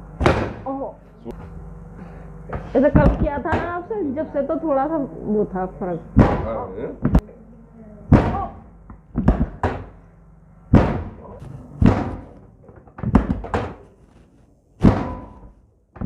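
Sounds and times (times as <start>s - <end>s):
heavy thuds: 0.0s - 3.9s, 6.0s - 7.2s, 8.1s - 10.0s, 10.7s - 16.0s.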